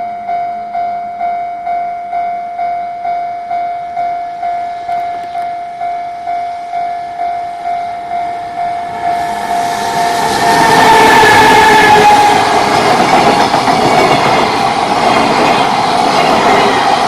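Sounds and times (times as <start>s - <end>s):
approaching freight train: 0.0s - 17.0s.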